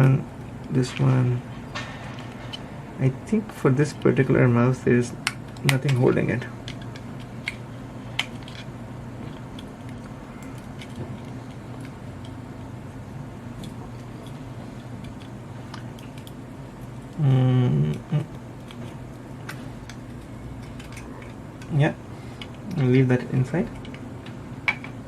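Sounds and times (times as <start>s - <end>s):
low hum: 0.0s - 25.0s
man humming: 17.1s - 18.4s.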